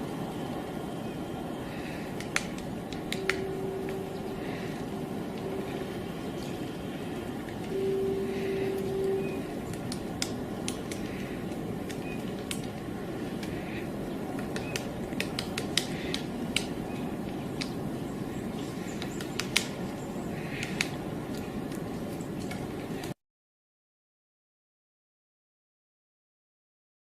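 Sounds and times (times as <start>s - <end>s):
low hum: 0.0s - 20.4s
background rumble: 0.0s - 23.1s
woodpecker tapping on wood: 14.4s - 16.7s, 18.8s - 19.8s.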